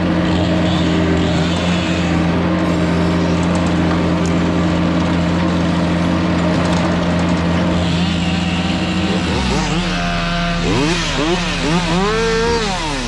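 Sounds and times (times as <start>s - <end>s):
small engine revving: 0.0s - 13.0s.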